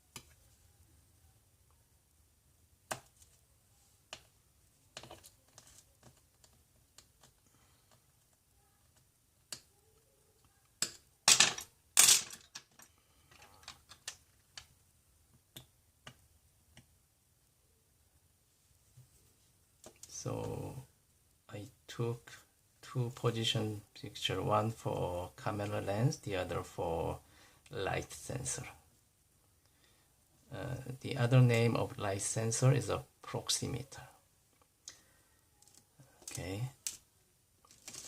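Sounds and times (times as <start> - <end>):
clatter of small parts: 10.8 - 14.7, 35.6 - 37.0, 37.6 - 38.0.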